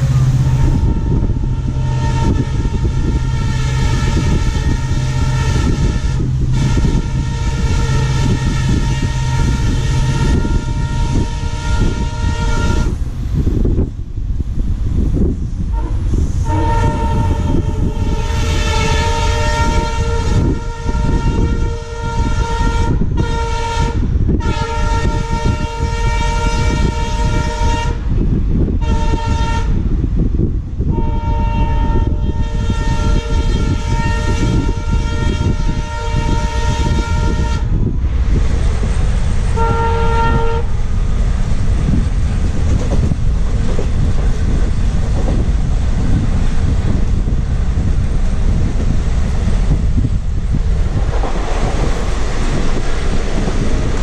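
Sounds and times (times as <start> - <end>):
train horn blasts: 0.0 - 13.0, 15.7 - 28.0, 28.8 - 29.8, 30.9 - 37.9, 39.5 - 40.8
running train rumble: 0.0 - 54.0.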